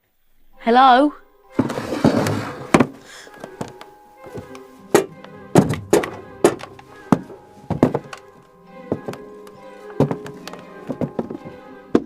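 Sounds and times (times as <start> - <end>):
background music with held tones: 0.0 - 12.0
sharp knocks and thuds: 5.0 - 8.2.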